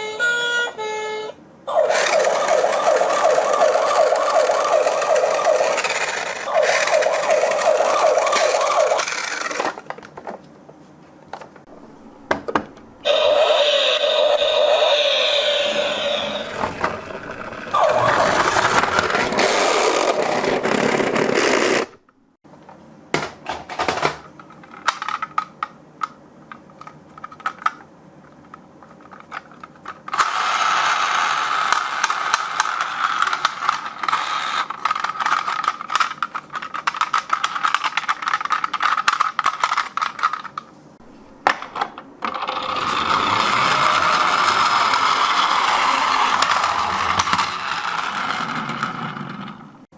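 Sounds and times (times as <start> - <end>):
toy vehicle wheels running: 1.7 - 9.8, 13.1 - 21.9, 30.1 - 40.5, 42.3 - 49.6
steady whir with clicking: 1.8 - 10.1, 30.1 - 39.2, 42.2 - 49.8.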